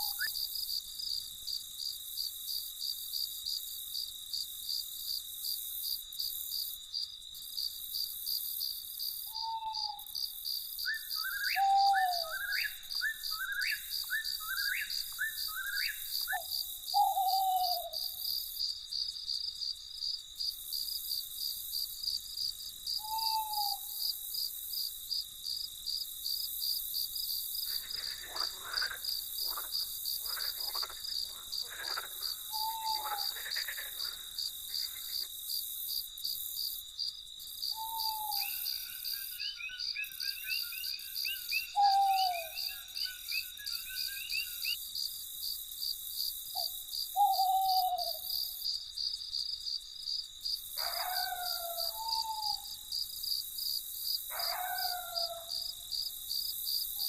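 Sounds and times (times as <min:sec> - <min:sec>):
crickets chirping: 0:00.0 - 0:57.0
night bird falling call: 0:09.3 - 0:10.0, 0:10.8 - 0:18.2, 0:23.0 - 0:24.0, 0:27.7 - 0:35.3, 0:37.7 - 0:44.8, 0:46.6 - 0:48.4, 0:50.8 - 0:52.8, 0:54.3 - 0:55.7.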